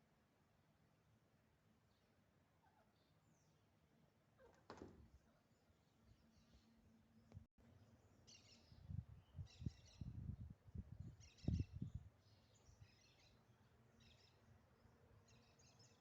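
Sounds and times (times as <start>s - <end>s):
faint bird chirps: 1.9s - 3.6s, 7.9s - 10.3s, 11.0s - 16.0s.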